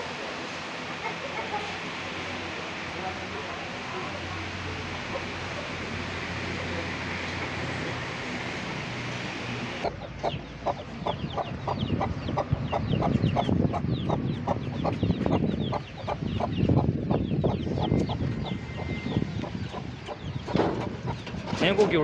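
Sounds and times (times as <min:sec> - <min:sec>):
chickens clucking: 0:00.9 - 0:02.4, 0:09.7 - 0:22.0
chicks peeping: 0:09.8 - 0:22.0.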